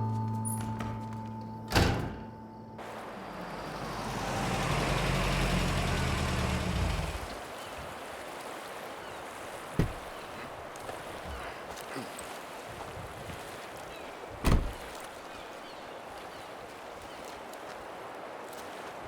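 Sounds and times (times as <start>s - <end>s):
car driving past: 2.8s - 7.4s.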